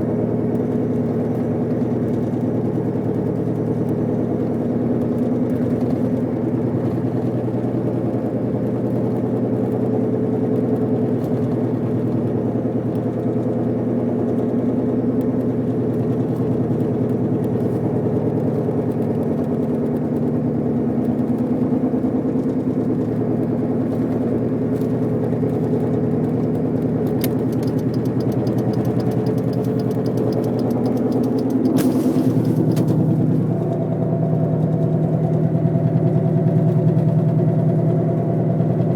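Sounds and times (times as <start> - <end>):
car grinding whining drone: 27.0 - 34.0
brief hiss: 31.7 - 33.2.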